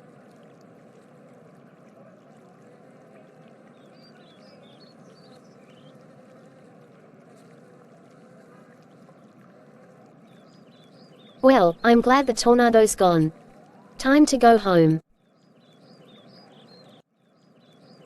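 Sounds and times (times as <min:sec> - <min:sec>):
faint hum: 0:00.0 - 0:15.0.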